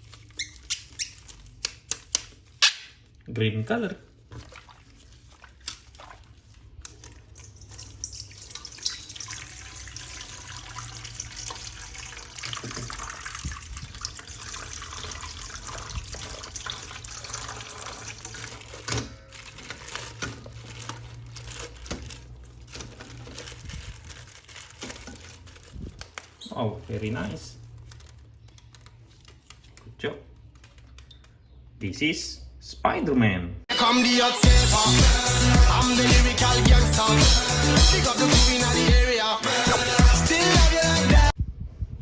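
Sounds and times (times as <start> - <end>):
tap water splashing into sink: 11.0 - 19.1.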